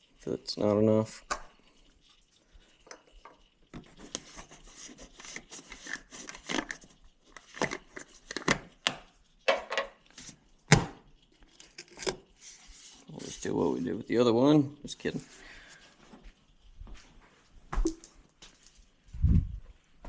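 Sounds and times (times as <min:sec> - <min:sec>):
tools knocking and scraping: 0:09.5 - 0:10.0.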